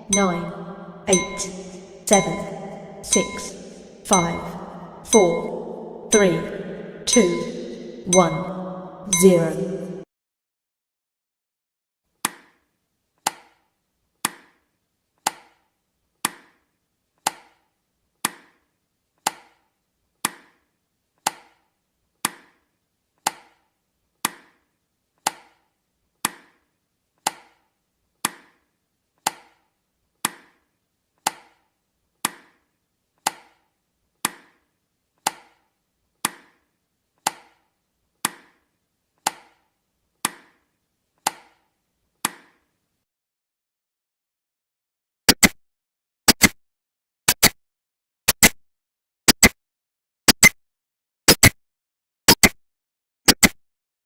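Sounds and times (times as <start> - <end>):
sharp woody timer ticks: 0.0 - 9.4, 49.3 - 49.6, 50.3 - 50.6, 51.3 - 51.6.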